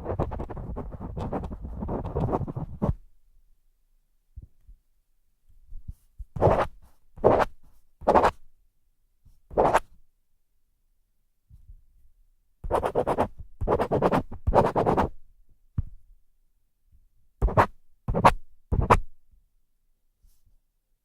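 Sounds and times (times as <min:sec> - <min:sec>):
pen scratching on paper: 0:00.0 - 0:03.0, 0:06.4 - 0:08.4, 0:09.5 - 0:09.9, 0:12.6 - 0:15.1, 0:17.4 - 0:19.0.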